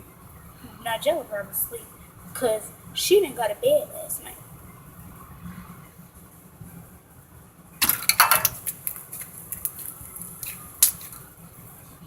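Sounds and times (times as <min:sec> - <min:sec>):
clicks and clatter: 0:07.8 - 0:11.3.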